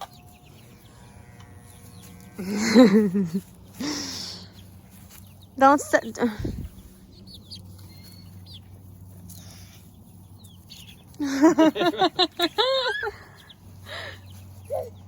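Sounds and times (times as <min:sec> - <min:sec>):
chickens clucking: 0:00.0 - 0:15.0.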